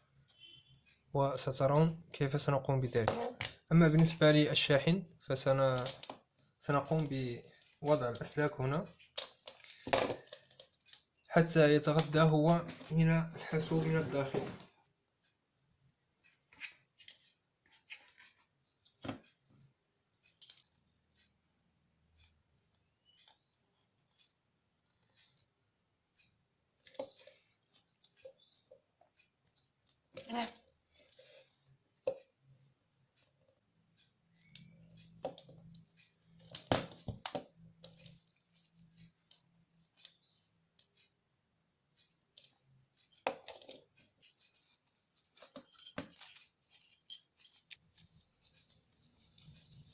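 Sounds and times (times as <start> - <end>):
faint clicks and scrapes of wires: 0.0 - 21.4, 22.1 - 41.2, 41.8 - 49.9
clicks and taps of small parts: 5.7 - 6.3.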